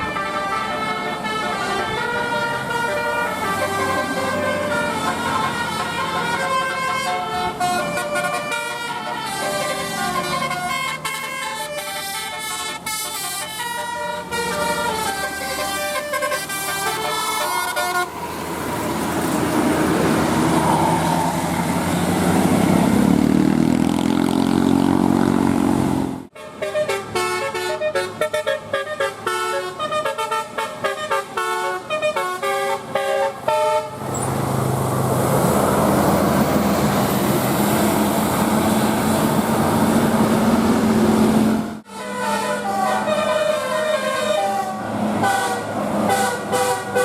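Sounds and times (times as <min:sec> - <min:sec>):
bus horn playing a tune: 0:00.0 - 0:19.5, 0:26.0 - 0:34.4, 0:40.9 - 0:47.0
bus engine running: 0:00.0 - 0:47.0
road noise: 0:00.0 - 0:47.0.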